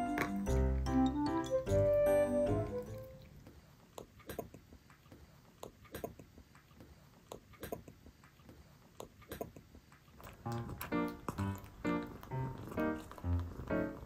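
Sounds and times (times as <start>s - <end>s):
cat chewing crunchy food: 8.4s - 14.0s.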